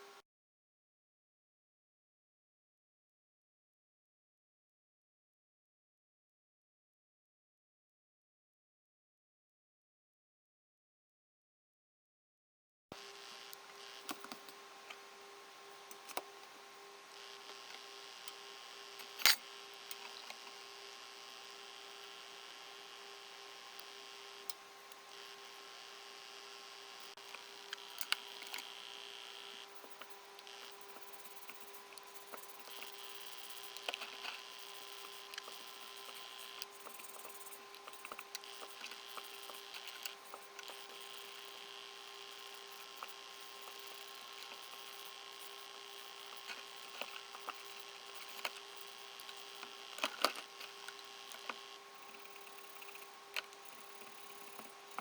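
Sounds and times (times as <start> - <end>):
steady electric hum: 13.0 - 55.0.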